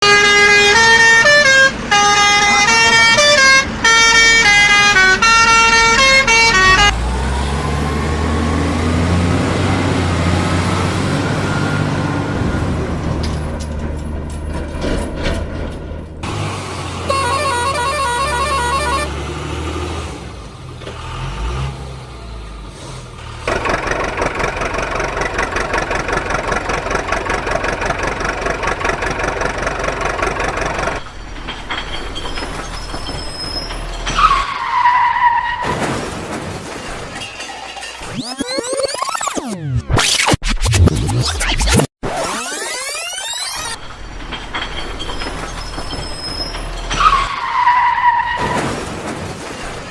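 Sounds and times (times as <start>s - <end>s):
truck horn playing a tune: 0.0s - 7.3s, 17.0s - 19.4s
heavy engine rumbling with whine: 0.0s - 35.6s, 37.2s - 49.9s
pulsing beep: 17.1s - 19.1s, 38.1s - 43.8s.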